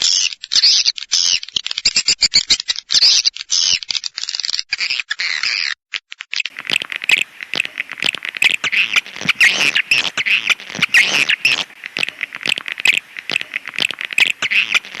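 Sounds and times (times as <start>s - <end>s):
swiftlet clicks and chirps: 6.3s - 15.0s.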